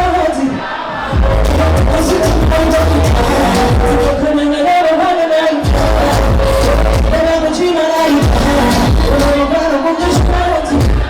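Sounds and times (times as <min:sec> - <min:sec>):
pop music with singer: 0:00.0 - 0:11.0
sliding deep bass notes: 0:01.2 - 0:04.4, 0:05.7 - 0:07.5, 0:08.2 - 0:11.0.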